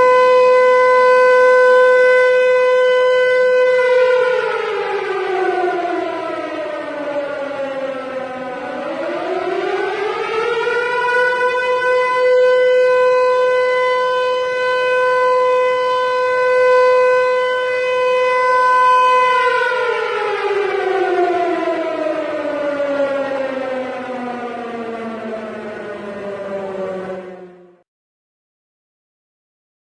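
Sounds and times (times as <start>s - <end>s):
civil defense siren wailing: 0.0s - 27.8s.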